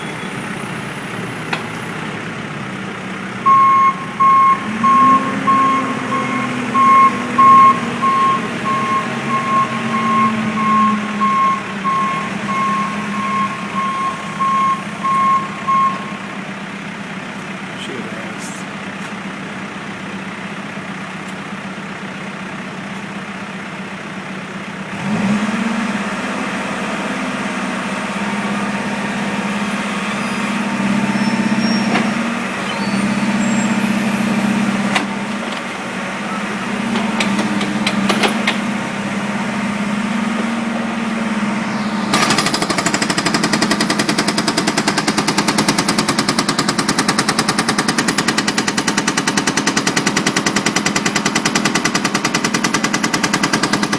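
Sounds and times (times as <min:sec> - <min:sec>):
diesel engine running: 0:00.0 - 0:53.9
hydraulic breaker hammering: 0:36.8 - 0:38.8, 0:42.1 - 0:53.9.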